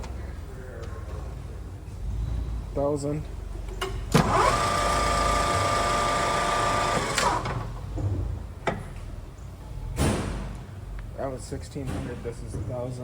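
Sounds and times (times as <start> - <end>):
lathe gear whine: 4.2 - 7.5.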